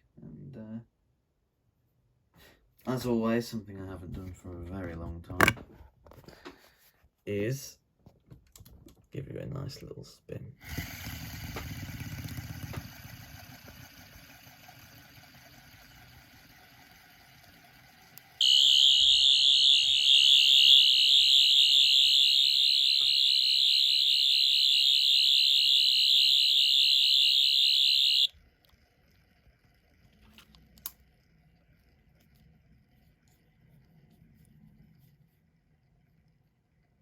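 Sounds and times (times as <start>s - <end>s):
high-pitched warbling electronic buzz: 18.4s - 28.3s.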